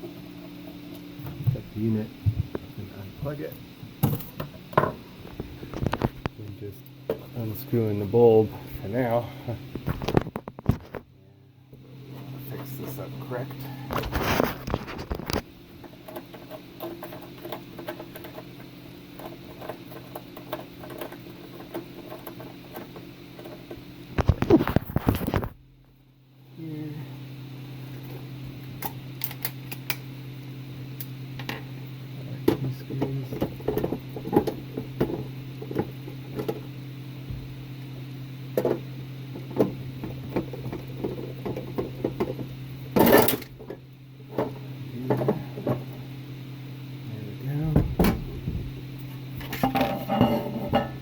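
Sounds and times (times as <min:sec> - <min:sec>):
low electrical hum: 0:00.0 - 0:51.0
parts clattering: 0:49.4 - 0:51.0.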